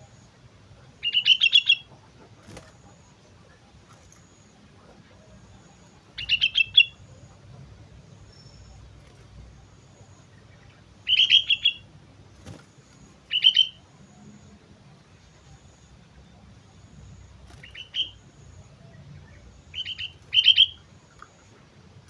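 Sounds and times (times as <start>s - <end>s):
bulbul singing: 0.0s - 22.0s.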